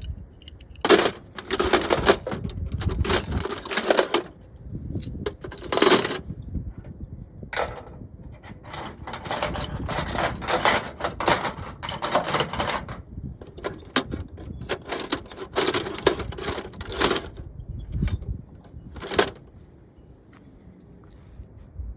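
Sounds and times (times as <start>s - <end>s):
metal tools clinking: 0.0s - 6.3s, 7.6s - 19.5s.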